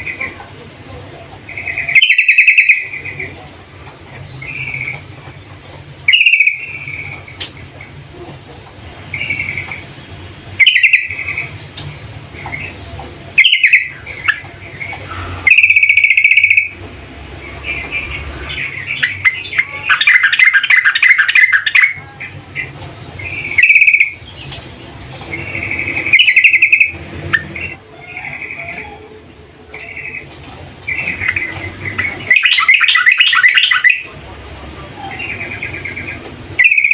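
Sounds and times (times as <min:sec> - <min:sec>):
bird rapid chattering: 0:00.0 - 0:29.0, 0:29.7 - 0:36.9
bulbul bubbly calls: 0:01.4 - 0:03.4, 0:06.0 - 0:08.2, 0:10.4 - 0:11.6, 0:12.4 - 0:24.3, 0:25.3 - 0:28.7, 0:30.9 - 0:36.9.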